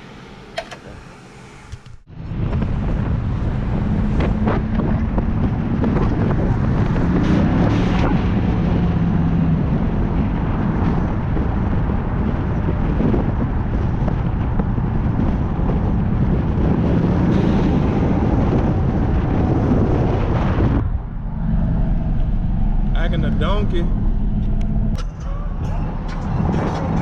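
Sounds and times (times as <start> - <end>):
vehicle engine rumble: 0.0 - 27.0
wind rushing over microphone: 1.7 - 25.0, 25.6 - 27.0.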